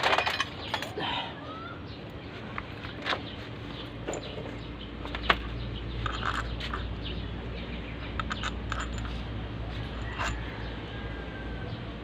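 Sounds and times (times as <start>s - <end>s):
metal tools clinking on engine parts: 0.0s - 1.0s, 2.8s - 10.7s.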